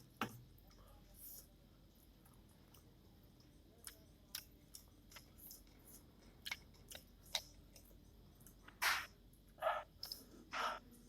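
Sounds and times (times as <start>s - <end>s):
chewing and mouth noises: 2.2s - 8.7s.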